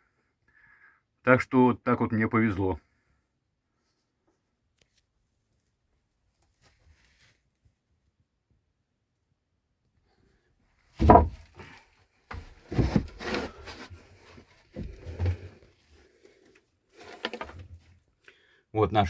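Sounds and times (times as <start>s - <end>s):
wood scraping and knocking: 11.0s - 15.7s, 17.0s - 17.9s.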